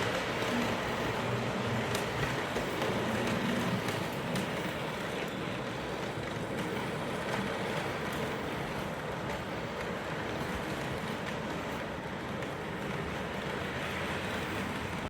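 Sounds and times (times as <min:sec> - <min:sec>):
model train rumbling on track: 0:00.0 - 0:15.0.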